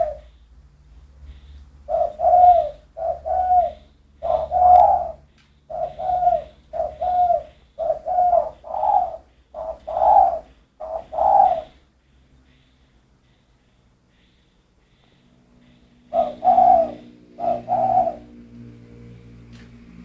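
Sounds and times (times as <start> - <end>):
dove cooing: 0.0 - 0.4, 1.3 - 11.9, 15.6 - 20.0.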